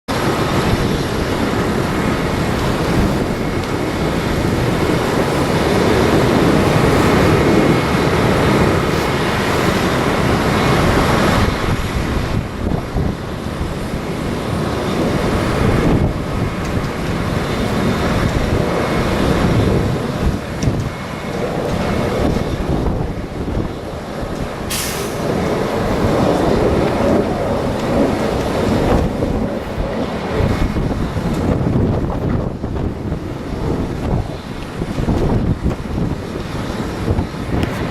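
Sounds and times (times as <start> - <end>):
wind buffeting microphone: 0.1 - 37.9
high hiss: 24.7 - 25.4.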